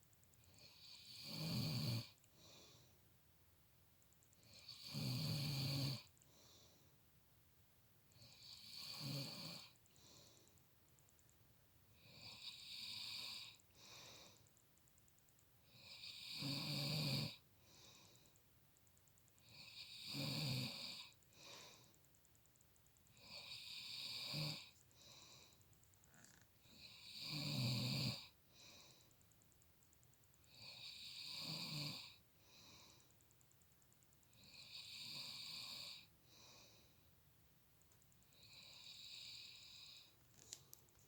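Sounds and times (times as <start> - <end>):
man snoring loudly: 0.7 - 2.1, 4.6 - 6.1, 8.4 - 9.7, 15.8 - 17.4, 19.5 - 21.1, 23.2 - 24.7, 26.8 - 28.3, 30.6 - 32.2, 34.5 - 36.1.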